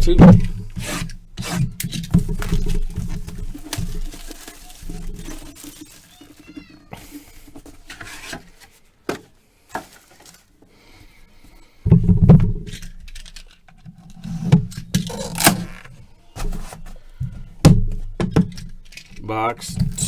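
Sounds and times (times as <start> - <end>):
cardboard and packaging scraping: 0.0 - 10.6, 14.1 - 17.2.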